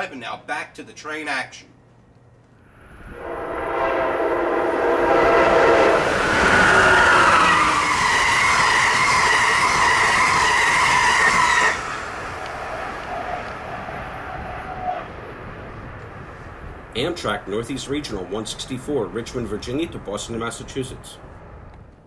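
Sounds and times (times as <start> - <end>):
train rumble: 2.7 - 22.0
train horn blast: 2.8 - 15.2.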